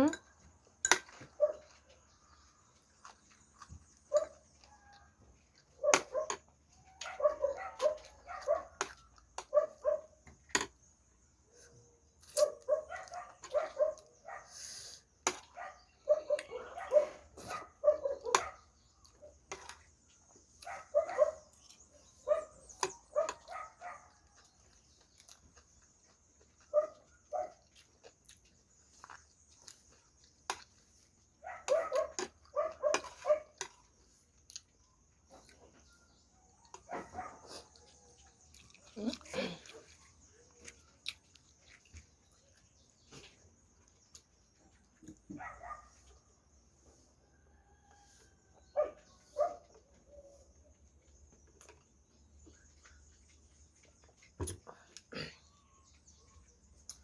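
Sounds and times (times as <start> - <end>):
dog barking and yipping: 1.2 - 1.8, 4.1 - 10.2, 12.4 - 14.6, 15.4 - 19.4, 20.6 - 24.2, 26.6 - 27.8, 31.4 - 33.6, 36.6 - 38.3, 45.3 - 46.2, 48.2 - 50.5.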